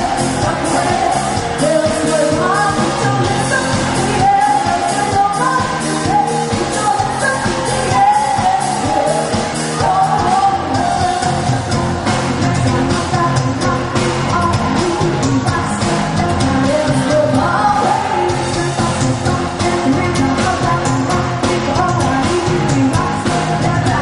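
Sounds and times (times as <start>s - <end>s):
band playing a song: 0.0s - 24.0s
drums steady beat: 0.0s - 24.0s
lead singer singing: 0.0s - 24.0s.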